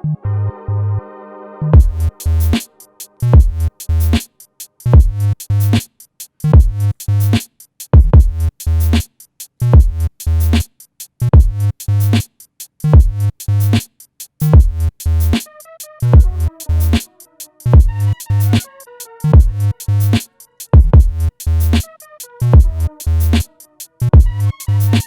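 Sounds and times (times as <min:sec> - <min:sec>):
deep bass hits: 0:01.8 - 0:02.6, 0:03.2 - 0:04.1
electronic music with drum machine: 0:01.8 - 0:05.3, 0:14.5 - 0:25.0.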